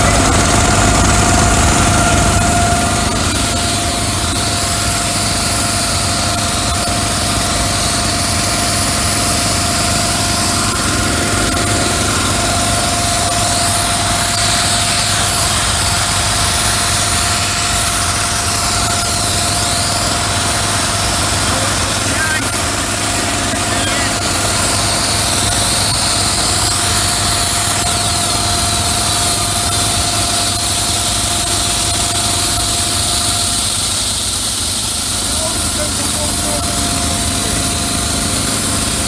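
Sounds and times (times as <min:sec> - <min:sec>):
engine running steadily: 0:00.0 - 0:39.0
high whine: 0:00.0 - 0:39.0.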